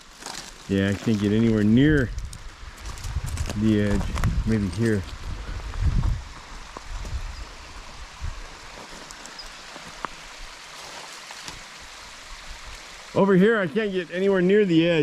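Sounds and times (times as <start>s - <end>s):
waterfall rushing: 7.4s - 15.0s.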